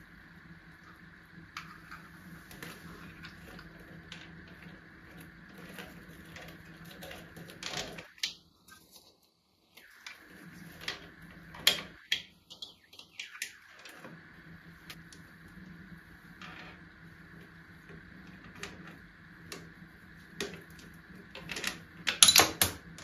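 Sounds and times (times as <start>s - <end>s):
faint steady hum: 0.0s - 23.0s
objects clicking and tapping: 20.4s - 23.0s.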